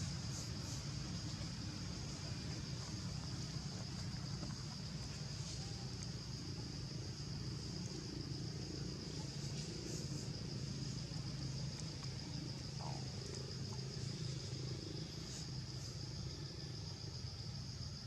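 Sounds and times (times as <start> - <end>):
constant low rumble: 0.0 - 18.0
shrill insect drone: 5.2 - 18.0.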